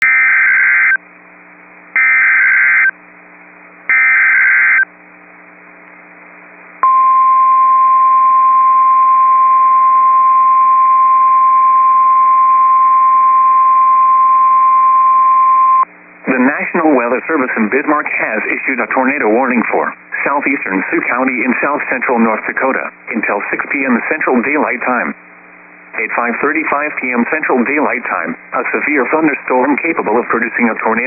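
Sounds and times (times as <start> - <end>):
steady warning alarm tone: 2.0 - 2.9, 3.9 - 4.8.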